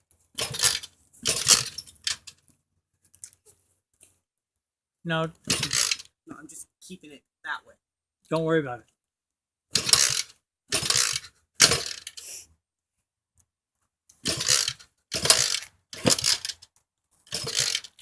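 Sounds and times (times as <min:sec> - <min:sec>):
engine turning over: 0:00.4 - 0:02.3, 0:05.5 - 0:06.0, 0:09.8 - 0:12.2, 0:14.2 - 0:16.6, 0:17.3 - 0:18.0
motorcycle kick-starter kicked: 0:09.8 - 0:12.1, 0:14.2 - 0:16.6, 0:17.3 - 0:18.0.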